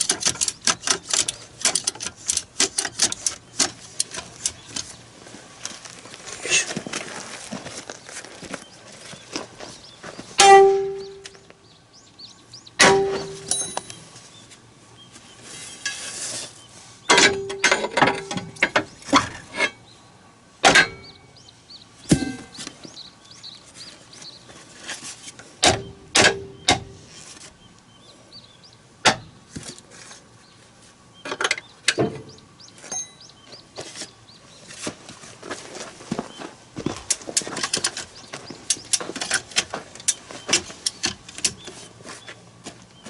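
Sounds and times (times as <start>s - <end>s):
metal tool clanks: 10.4s - 11.4s, 12.8s - 14.1s, 17.1s - 19.8s, 32.9s - 33.3s.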